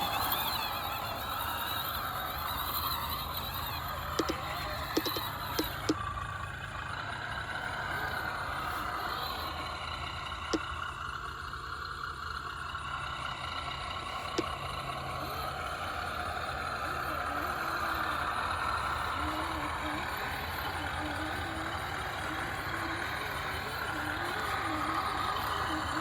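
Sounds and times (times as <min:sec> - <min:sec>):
toy car electric motor whine: 0:00.0 - 0:26.0
sharp clicks: 0:02.6 - 0:06.1.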